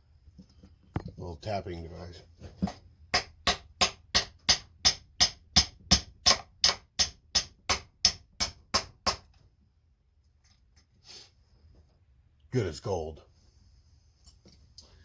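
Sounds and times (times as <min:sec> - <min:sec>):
small hammer tapping metal: 0:02.6 - 0:09.3.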